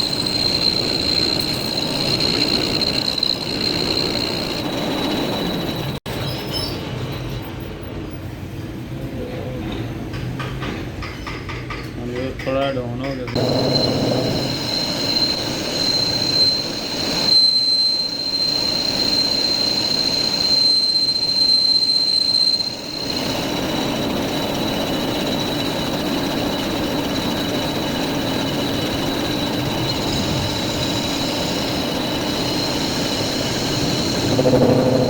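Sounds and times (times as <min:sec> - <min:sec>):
lathe running noise: 0:00.0 - 0:06.0, 0:13.4 - 0:35.0
lathe cutting tool squealing: 0:00.0 - 0:06.8, 0:13.4 - 0:35.0.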